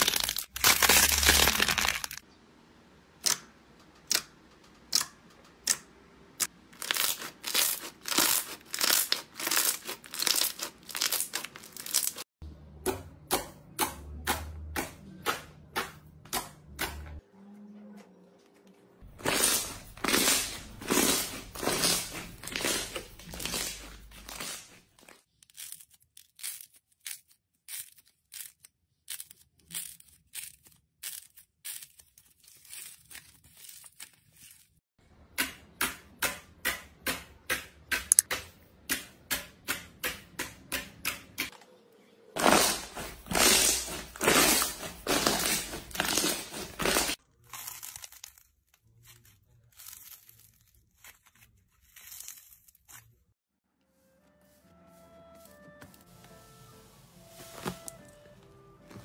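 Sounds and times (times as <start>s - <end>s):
crunchy slime crackling: 0.0s - 2.2s, 6.7s - 12.3s, 19.1s - 34.8s, 42.4s - 53.2s.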